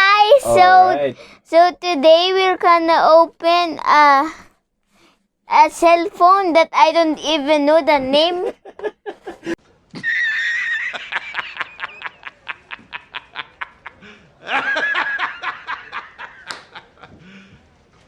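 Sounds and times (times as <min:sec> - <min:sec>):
person giggling: 0:00.5 - 0:01.2, 0:08.4 - 0:17.4.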